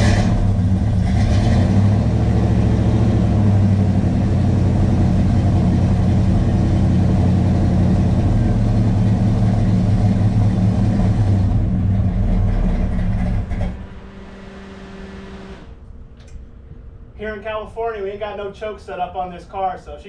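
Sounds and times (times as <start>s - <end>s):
car engine running: 0.0s - 15.8s.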